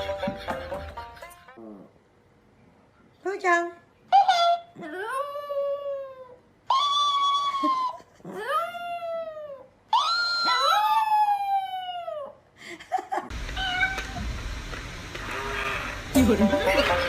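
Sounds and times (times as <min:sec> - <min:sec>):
pet animal yowling: 0:04.1 - 0:12.4, 0:13.6 - 0:14.2, 0:15.2 - 0:16.0.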